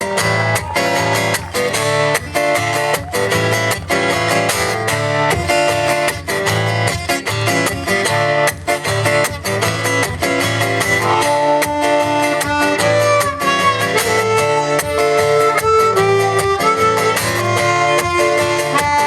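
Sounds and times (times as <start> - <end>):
guitar strumming chords: 0.1 - 18.8.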